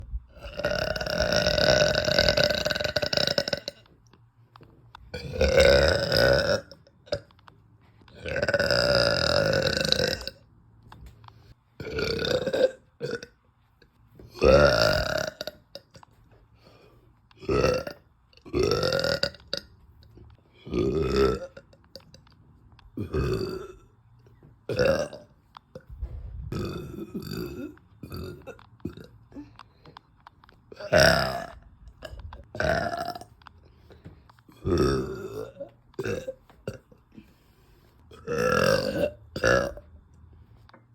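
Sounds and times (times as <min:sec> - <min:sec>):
woman burping loudly: 0:00.3 - 0:03.9, 0:05.1 - 0:07.3, 0:08.1 - 0:10.5, 0:11.8 - 0:13.4, 0:14.3 - 0:16.0, 0:17.4 - 0:19.7, 0:20.6 - 0:22.2, 0:23.0 - 0:23.9, 0:24.7 - 0:25.9, 0:26.5 - 0:29.6, 0:30.7 - 0:33.4, 0:34.5 - 0:37.3, 0:38.1 - 0:39.9.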